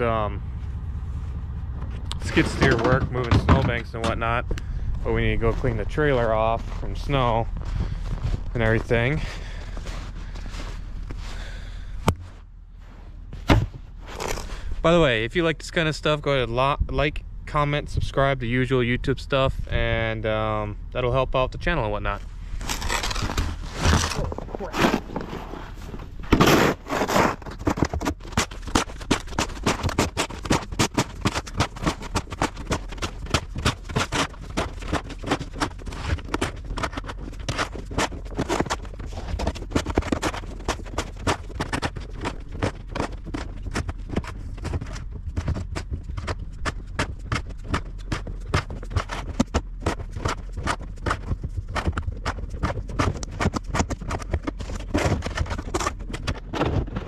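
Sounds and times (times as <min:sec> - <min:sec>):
steady low rumble: 0:00.0 - 0:57.0
snow crunching and scraping: 0:05.0 - 0:15.2, 0:22.2 - 0:44.8.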